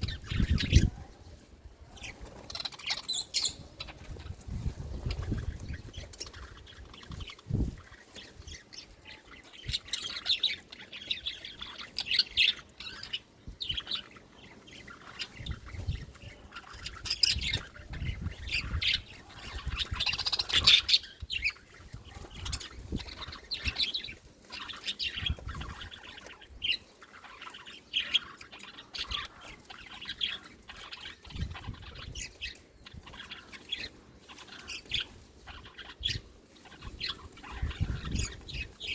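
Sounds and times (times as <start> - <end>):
budgerigars chirping and squawking: 0.0 - 38.9
rustling: 21.6 - 38.9.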